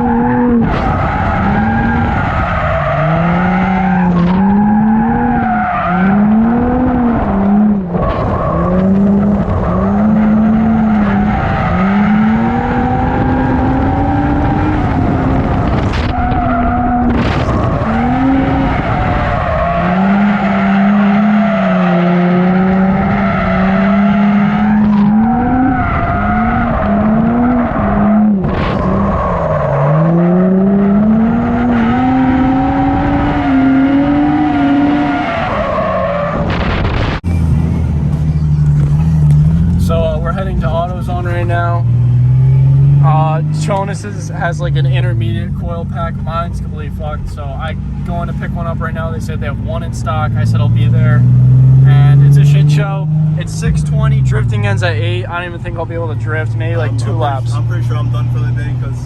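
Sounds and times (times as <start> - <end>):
car engine revving: 0.0 - 59.0
tyre squeal: 16.0 - 36.5.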